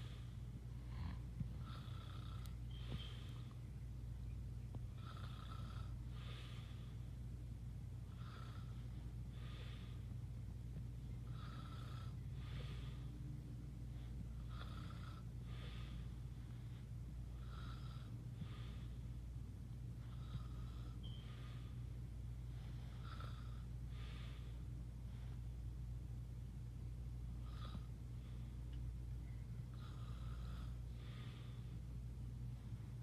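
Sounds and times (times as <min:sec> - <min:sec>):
steady low hum: 0:00.0 - 0:33.0
heavy snoring: 0:00.8 - 0:02.5, 0:05.0 - 0:06.0, 0:11.3 - 0:12.8, 0:14.4 - 0:15.3.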